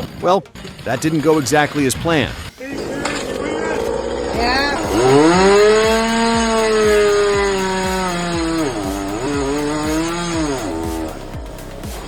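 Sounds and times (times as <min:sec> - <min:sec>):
chainsaw at full throttle: 0:02.7 - 0:12.0.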